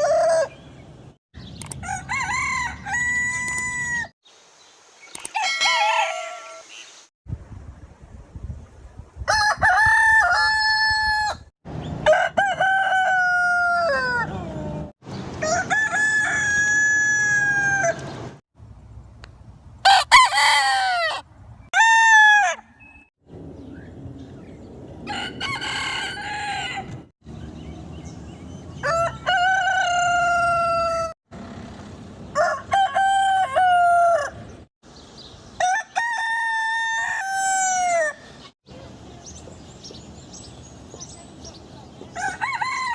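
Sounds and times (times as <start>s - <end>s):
roosters crowing: 0.0s - 0.7s, 1.7s - 4.1s, 5.2s - 6.8s, 9.3s - 18.3s, 19.8s - 22.9s, 25.0s - 27.1s, 28.6s - 34.7s, 35.6s - 38.4s, 42.0s - 42.9s.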